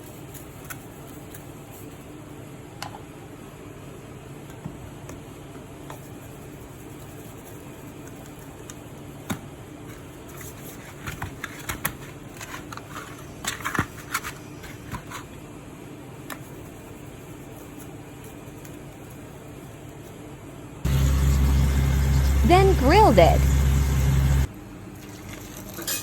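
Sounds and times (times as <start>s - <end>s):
steady low hum: 20.4s - 24.7s.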